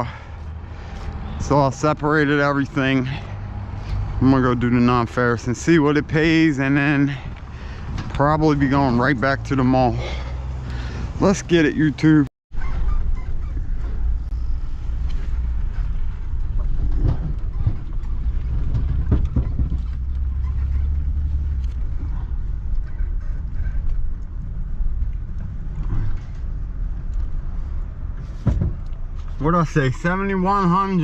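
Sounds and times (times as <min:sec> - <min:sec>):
truck engine rumbling: 0:00.0 - 0:31.0
knocks and rattles: 0:15.6 - 0:24.2.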